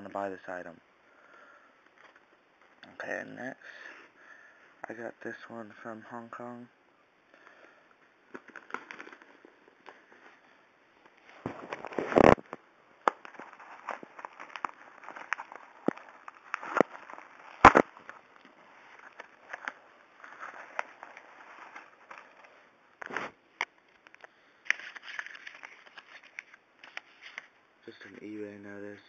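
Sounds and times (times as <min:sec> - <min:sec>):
package tearing: 0:08.3 - 0:09.5, 0:11.5 - 0:23.3
packaging crackling and rustling: 0:08.3 - 0:23.3, 0:23.9 - 0:27.5.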